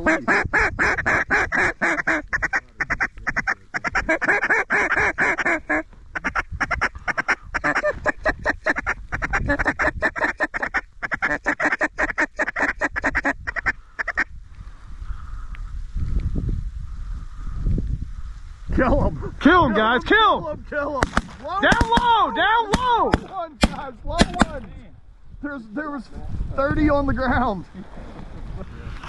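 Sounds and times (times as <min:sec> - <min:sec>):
duck call quacking: 0:00.0 - 0:14.3.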